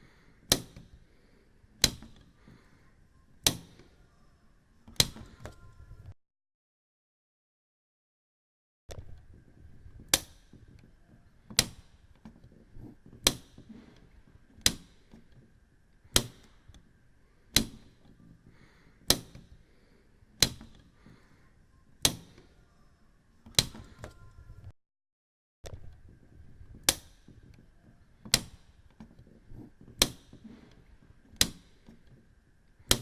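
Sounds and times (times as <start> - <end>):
low background hum: 0.0 - 6.2, 9.0 - 24.7, 25.7 - 33.0
switch clicking: 31.4 - 32.1.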